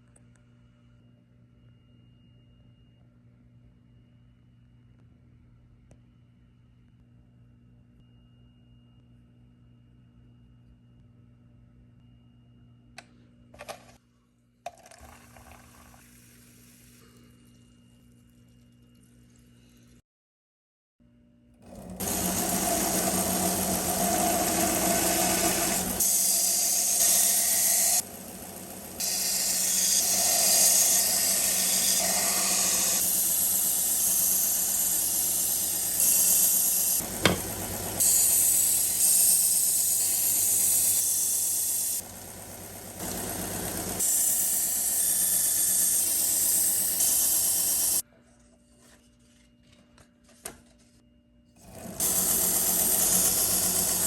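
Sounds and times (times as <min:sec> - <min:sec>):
grinder humming: 0:21.6 - 0:48.0, 0:51.6 - 0:54.0.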